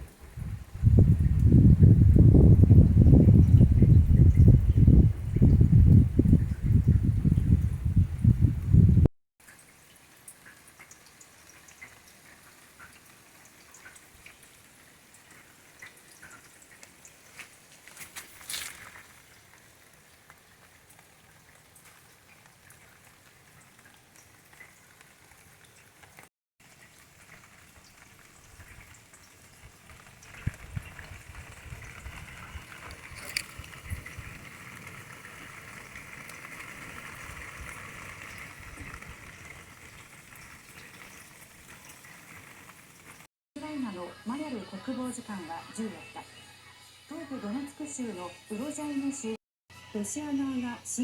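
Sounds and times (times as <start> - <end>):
low rustling rumble: 0.0 - 9.1, 29.6 - 43.3
faint ticks and crackles: 9.4 - 43.3.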